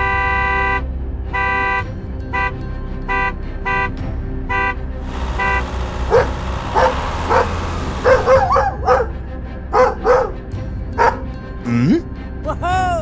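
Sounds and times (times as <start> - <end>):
horn toots: 0.0 - 8.5
low motor hum: 5.0 - 9.3.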